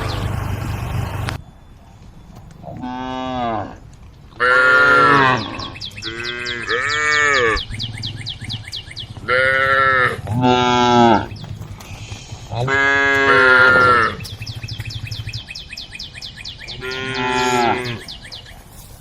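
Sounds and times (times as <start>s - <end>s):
cows mooing: 2.6s - 3.8s, 4.4s - 8.0s, 8.6s - 11.4s, 12.0s - 14.4s, 16.7s - 18.1s.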